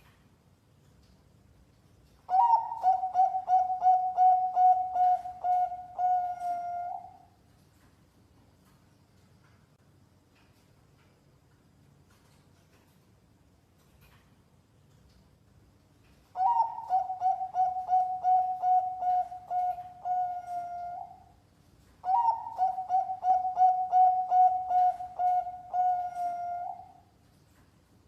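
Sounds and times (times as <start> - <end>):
dove cooing: 2.3 - 7.3, 16.4 - 21.3, 22.0 - 27.0.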